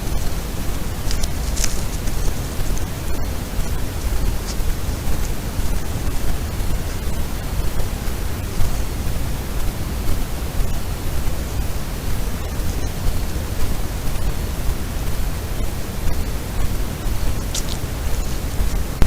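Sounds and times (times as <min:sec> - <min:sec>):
faint clicks: 0:00.0 - 0:09.7, 0:16.0 - 0:19.0
loud low hiss: 0:00.0 - 0:19.0.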